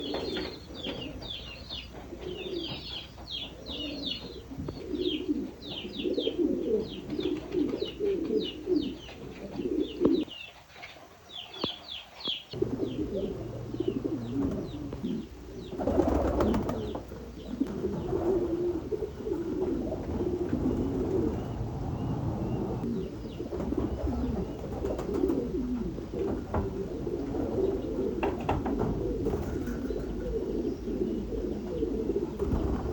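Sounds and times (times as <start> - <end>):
pigeons cooing: 0.0 - 32.9.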